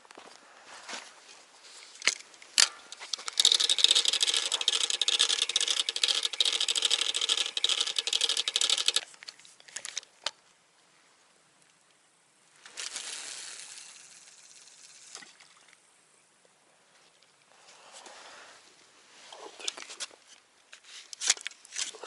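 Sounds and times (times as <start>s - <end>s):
fishing reel clicking: 2.6s - 9.1s, 12.7s - 15.2s.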